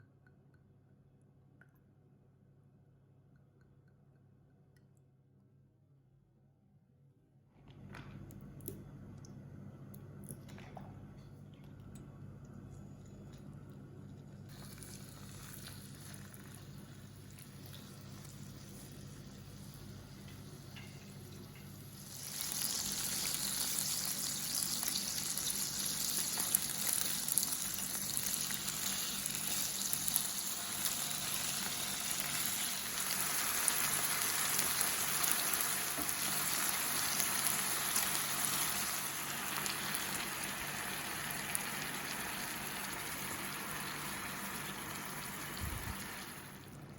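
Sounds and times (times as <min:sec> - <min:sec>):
food sizzling in a pan: 0:14.5 - 0:46.6.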